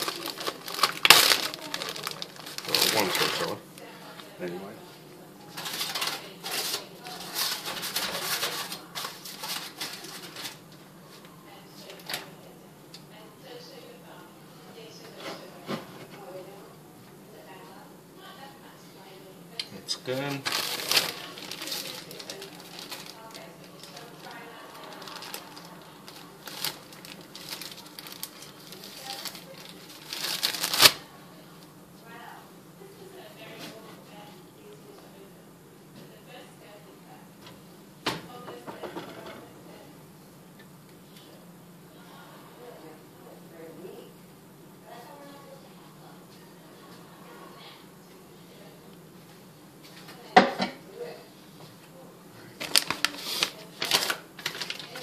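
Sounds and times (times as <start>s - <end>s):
eggs crackling in frying pan: 0.0s - 3.2s
plastic bag crinkling: 0.0s - 3.6s, 5.6s - 10.6s, 20.2s - 31.0s, 52.6s - 55.0s.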